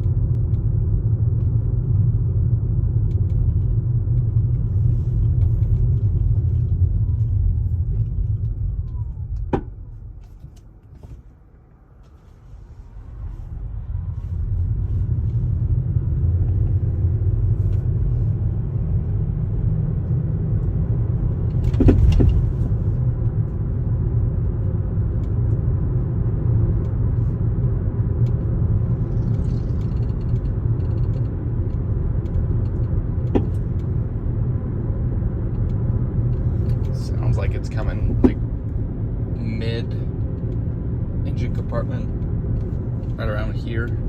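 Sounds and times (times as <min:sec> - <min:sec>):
car road rumble inside: 0:00.0 - 0:44.0
loud engine clunk: 0:21.5 - 0:22.6, 0:33.2 - 0:33.8.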